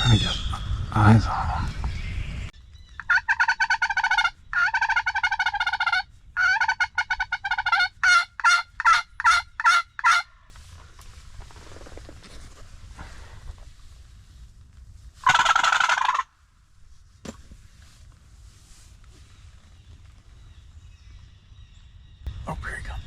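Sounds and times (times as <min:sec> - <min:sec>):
turkey calling: 0:02.7 - 0:10.4, 0:15.2 - 0:16.3.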